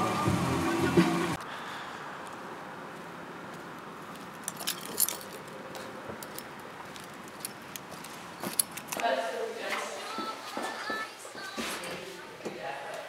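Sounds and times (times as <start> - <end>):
light metallic clinks and jingles: 4.4 - 9.1.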